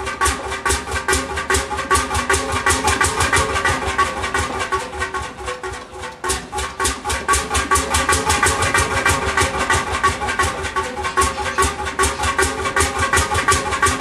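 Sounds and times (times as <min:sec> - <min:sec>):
diesel engine knocking: 0:00.0 - 0:14.0.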